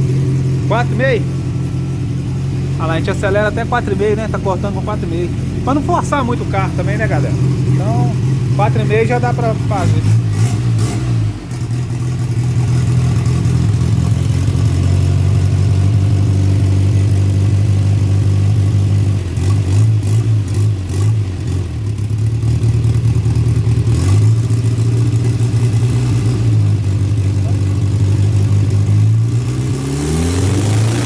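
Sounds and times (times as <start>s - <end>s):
turbocharged engine revving: 0.0s - 31.0s.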